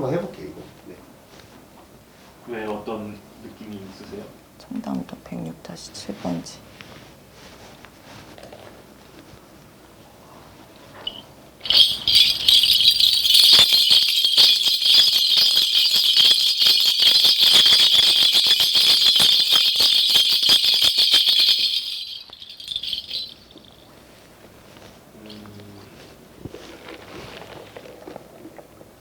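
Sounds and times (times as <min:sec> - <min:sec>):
bell cluster jingling: 0:11.0 - 0:24.2.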